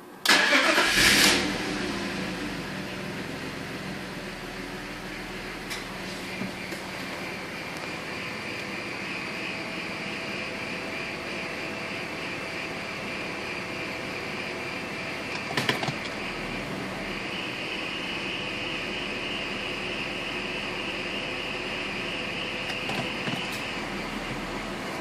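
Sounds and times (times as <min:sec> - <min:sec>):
car mechanical hum with whine: 0:00.0 - 0:25.0.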